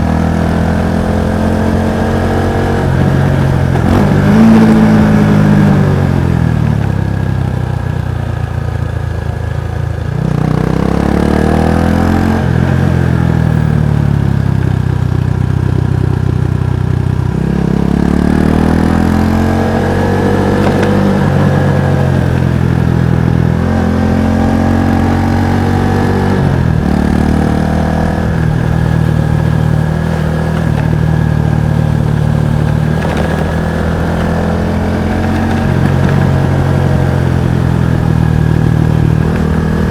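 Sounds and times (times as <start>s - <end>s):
motorcycle exhaust while riding: 0.0s - 39.9s.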